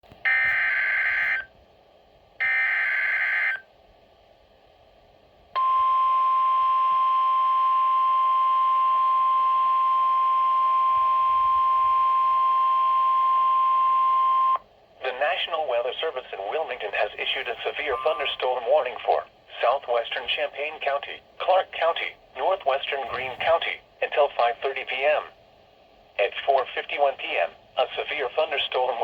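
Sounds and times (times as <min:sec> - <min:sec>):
steady single-pitch alert tone: 0:17.9 - 0:18.4.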